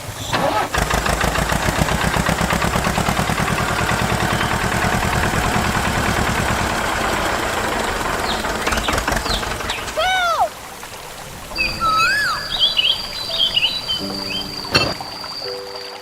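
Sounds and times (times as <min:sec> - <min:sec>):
small engine running: 0:00.5 - 0:10.0.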